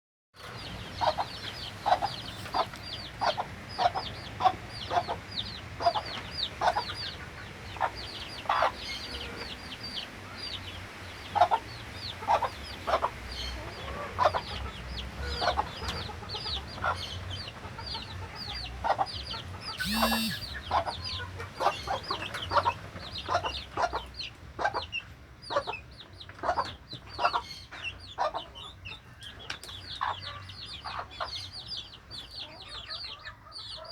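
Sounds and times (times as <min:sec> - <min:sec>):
chickens clucking: 0:00.4 - 0:33.9
louder longer chicken call: 0:19.8 - 0:20.6
short high peeping calls: 0:19.8 - 0:20.8.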